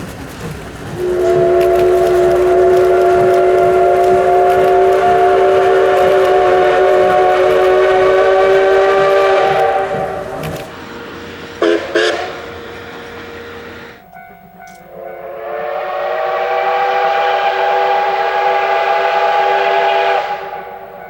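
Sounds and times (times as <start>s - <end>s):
steam locomotive whistle blast: 0.9s - 21.0s.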